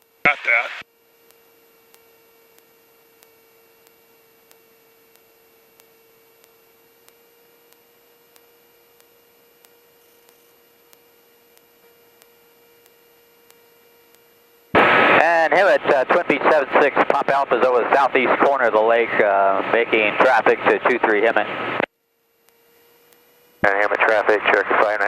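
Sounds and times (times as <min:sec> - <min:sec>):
faint electrical hum with whine: 0:00.0 - 0:25.0
soft ticks: 0:01.2 - 0:14.2.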